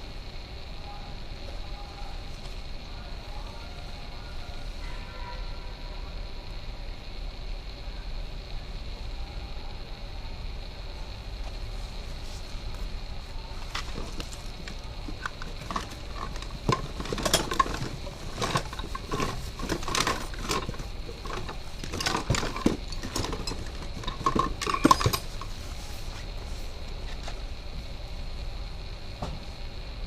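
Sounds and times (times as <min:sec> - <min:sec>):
metal tools clinking and knocking: 0:15.1 - 0:25.6.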